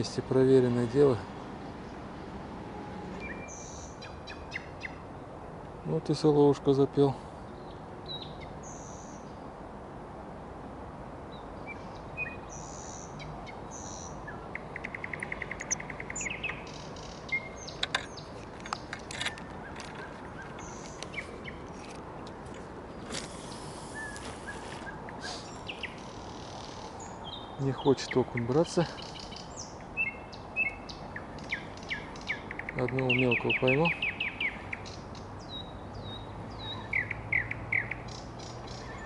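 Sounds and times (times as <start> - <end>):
background hiss: 0.0 - 38.8
nightingale singing: 3.1 - 5.3, 7.5 - 9.5, 11.3 - 21.9, 23.0 - 39.0.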